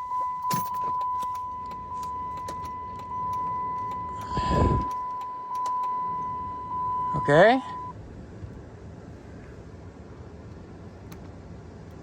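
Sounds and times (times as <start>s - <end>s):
high electronic beep: 0.0s - 7.9s.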